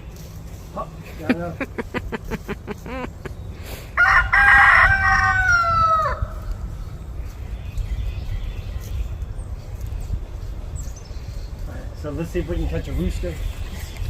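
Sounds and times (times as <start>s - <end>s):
rooster crowing: 4.0s - 6.5s.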